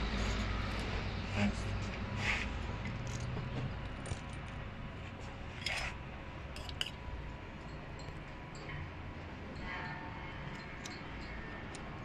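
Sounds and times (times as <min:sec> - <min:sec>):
metallic clinks of small parts: 0:06.6 - 0:07.0, 0:10.5 - 0:12.0.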